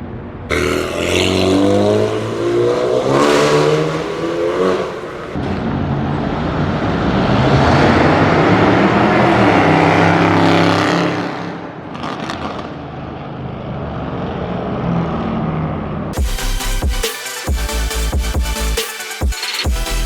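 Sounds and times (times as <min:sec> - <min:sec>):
sports car accelerating: 0:00.5 - 0:17.0
music: 0:16.2 - 0:20.0.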